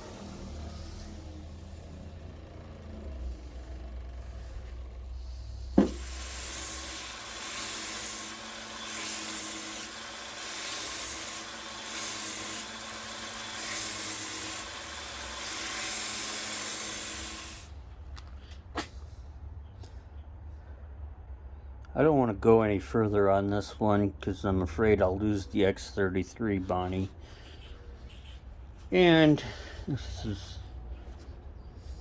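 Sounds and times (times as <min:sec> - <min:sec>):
wire wheel motor hum: 0:00.0 - 0:17.8
wire brush scrubbing metal: 0:05.9 - 0:17.7.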